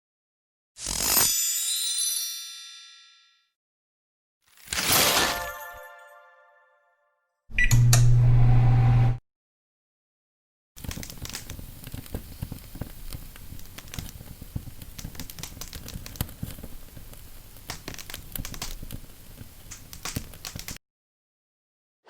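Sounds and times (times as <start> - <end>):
crackling with clicks and pops: 10.8 - 20.8.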